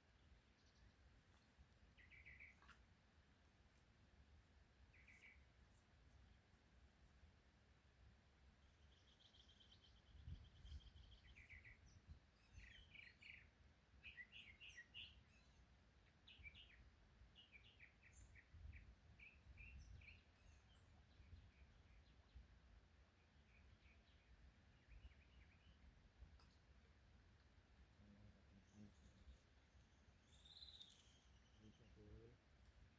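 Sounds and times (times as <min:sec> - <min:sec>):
bird whistle and chirps: 0:30.2 - 0:32.2.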